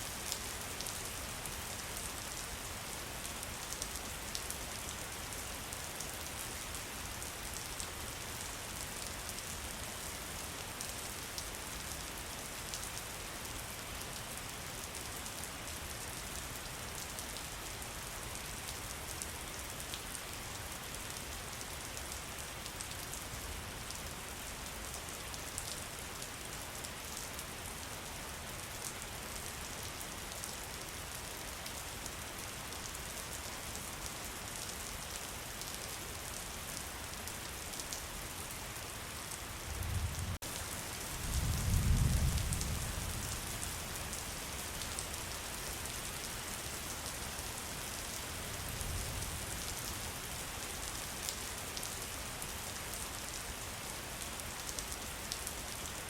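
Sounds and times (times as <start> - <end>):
steady rainfall: 0.0 - 56.0
low rumble of thunder: 39.7 - 40.4, 41.2 - 43.4.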